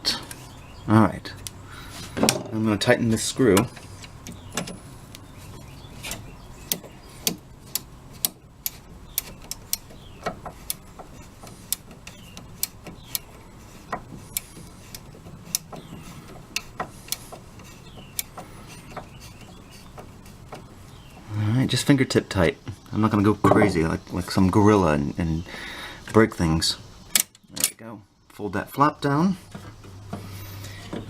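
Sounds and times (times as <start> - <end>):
screw turning clicks: 6.0 - 20.7.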